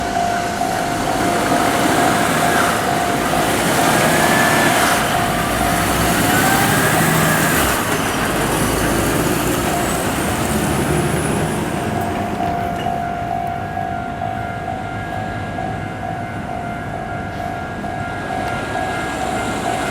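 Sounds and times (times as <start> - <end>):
truck engine and tyres rumbling: 0.0 - 14.5, 17.3 - 19.9
level-crossing alarm tone: 0.0 - 19.9.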